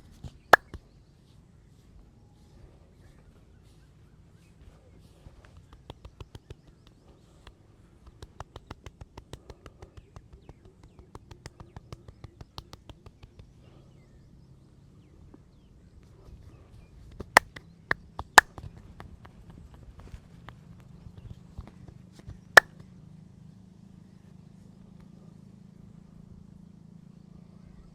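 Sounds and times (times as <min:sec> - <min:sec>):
hand claps: 0:05.7 - 0:06.6, 0:08.0 - 0:13.2.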